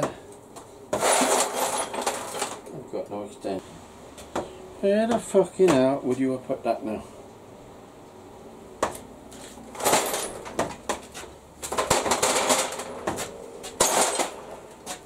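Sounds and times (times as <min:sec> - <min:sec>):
metal tools clattering: 0:00.9 - 0:02.7, 0:09.4 - 0:15.0.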